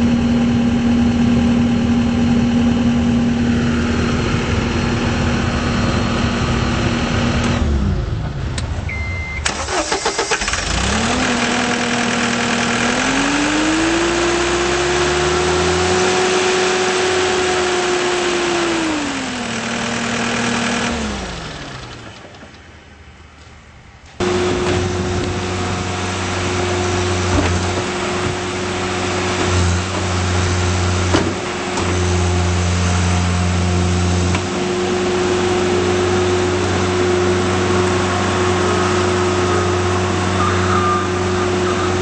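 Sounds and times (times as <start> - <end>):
diesel engine running: 0.0 - 42.0
short beep: 8.9 - 9.5, 40.3 - 42.0
engine starter cranking: 9.4 - 12.6.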